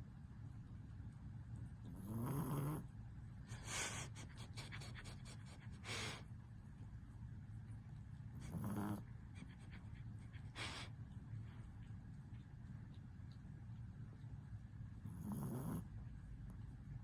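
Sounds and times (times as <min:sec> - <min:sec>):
steady low hum: 0:00.0 - 0:17.0
pet snoring: 0:01.9 - 0:02.9, 0:08.4 - 0:09.1, 0:15.0 - 0:15.9.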